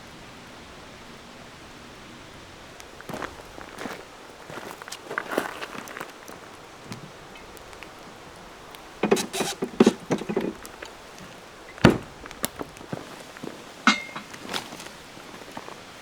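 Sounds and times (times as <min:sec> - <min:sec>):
handling rustles and clicks: 0:04.8 - 0:15.8
knocks and clatter: 0:09.0 - 0:12.9.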